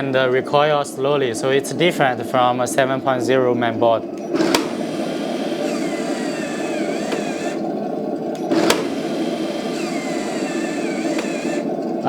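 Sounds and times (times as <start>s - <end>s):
recoil motor whining: 4.2s - 12.0s.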